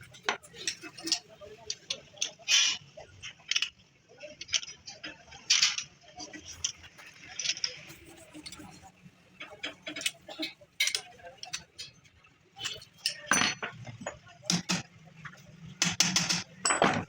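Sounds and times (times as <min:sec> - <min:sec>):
metallic clinks and taps: 0:09.9 - 0:12.0, 0:12.6 - 0:17.0.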